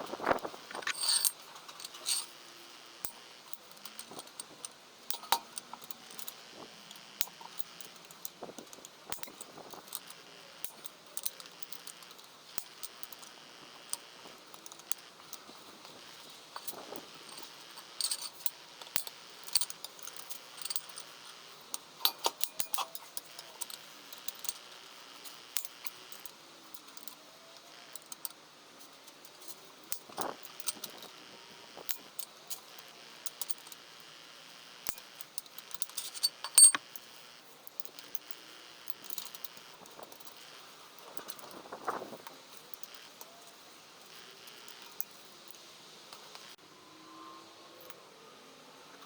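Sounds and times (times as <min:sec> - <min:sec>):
small metal tools clinking: 0:00.2 - 0:02.4, 0:03.0 - 0:27.2, 0:34.9 - 0:43.6.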